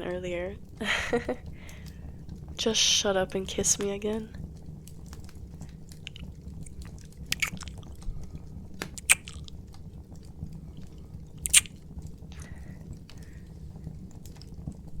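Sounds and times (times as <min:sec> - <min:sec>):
steady low hum: 0:00.0 - 0:15.0
wet lip smacks: 0:06.0 - 0:08.1, 0:08.8 - 0:09.6, 0:11.4 - 0:11.7.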